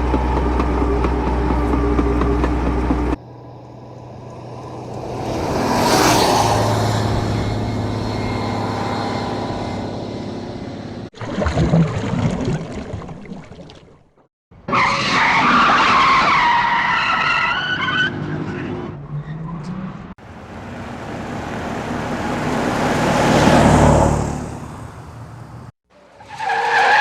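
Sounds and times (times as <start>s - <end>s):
vehicle passing: 2.8s - 11.1s, 20.2s - 25.7s
tyre squeal: 14.7s - 19.8s, 26.2s - 27.0s.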